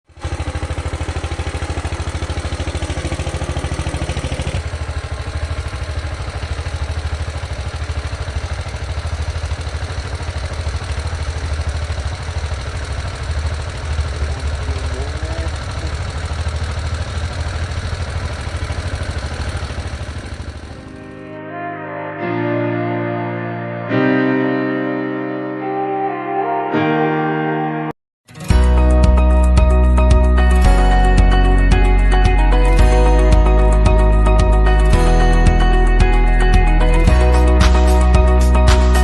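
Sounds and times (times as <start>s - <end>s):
small tractor engine running: 0.0s - 21.2s, 28.4s - 39.0s.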